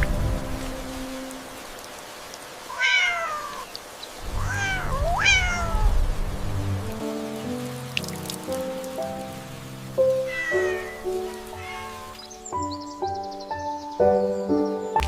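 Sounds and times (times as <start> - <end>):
soft background music: 0.0 - 2.1, 4.8 - 15.0
cat meowing: 2.7 - 3.7, 4.3 - 6.0, 10.2 - 12.3.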